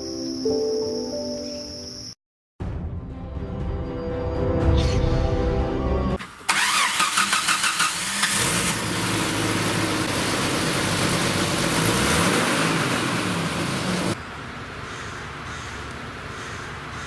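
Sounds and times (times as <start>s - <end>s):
engine cranking and starting: 6.2s - 14.1s.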